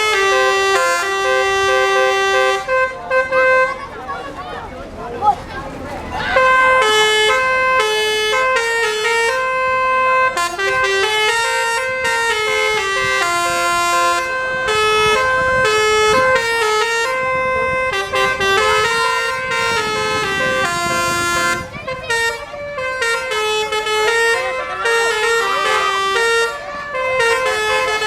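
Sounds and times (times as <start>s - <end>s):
bus musical horn playing a tune: 0.0s - 4.3s, 6.2s - 28.0s.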